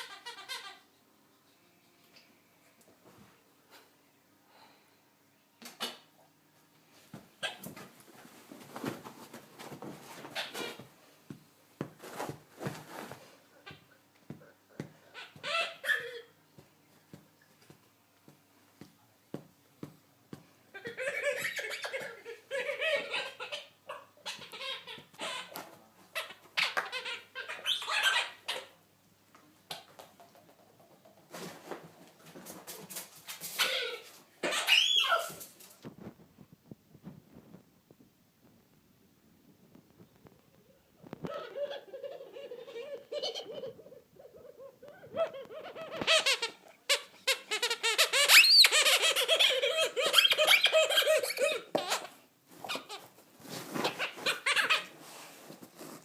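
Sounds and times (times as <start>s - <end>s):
soft scuffing: 6.9s - 13.4s
squeaky rubber ball squeaks: 45.3s - 53.0s.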